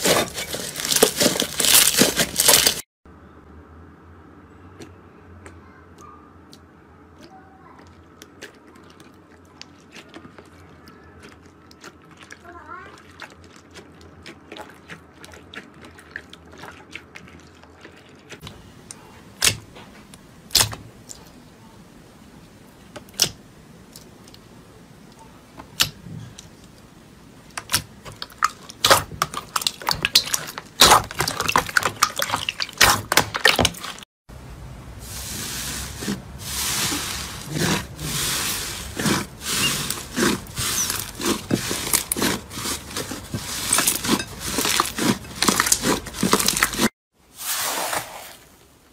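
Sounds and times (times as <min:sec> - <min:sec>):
slime squelching and popping: 0:27.5 - 0:34.0, 0:35.9 - 0:46.9.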